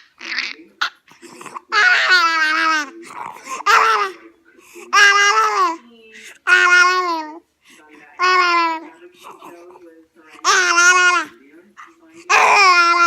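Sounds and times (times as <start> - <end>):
baby squealing: 0.0 - 4.2, 4.9 - 5.8, 10.4 - 11.3, 12.3 - 13.0.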